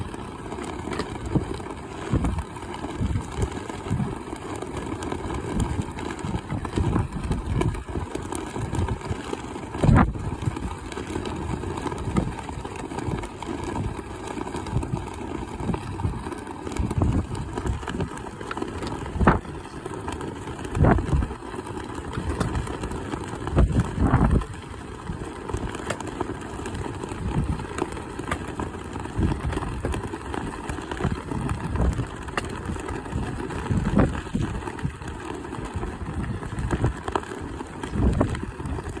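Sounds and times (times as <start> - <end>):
wind buffeting microphone: 5.5 - 14.0, 14.7 - 18.4, 19.0 - 19.8, 20.6 - 21.4, 22.1 - 25.8, 26.7 - 27.9, 29.0 - 37.1, 37.8 - 39.0.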